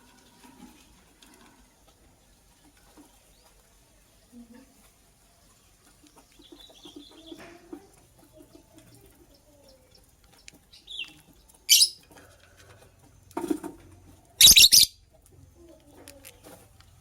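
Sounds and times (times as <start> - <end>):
bird chirping: 9.4 - 12.0, 14.4 - 15.0
shrill bird call: 14.4 - 14.9.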